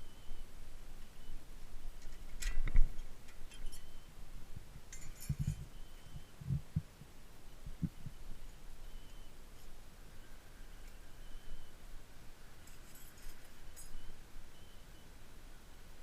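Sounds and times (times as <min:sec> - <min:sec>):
metallic clinks of tools: 0:04.9 - 0:05.6, 0:12.6 - 0:14.1.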